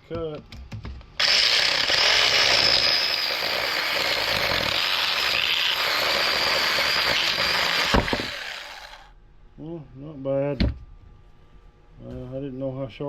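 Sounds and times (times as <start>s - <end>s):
mini chainsaw cutting: 1.2s - 9.1s.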